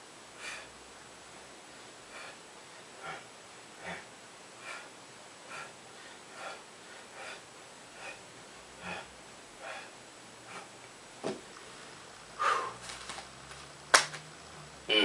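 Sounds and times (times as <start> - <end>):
person breathing out sharply: 12.4 - 12.9.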